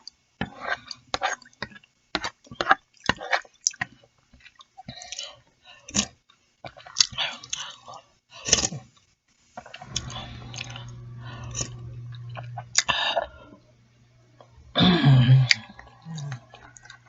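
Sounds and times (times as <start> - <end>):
chewing with wet smacking: 0.8 - 8.8
low steady hum: 9.6 - 17.0
throaty sound dropping in pitch: 9.6 - 17.0.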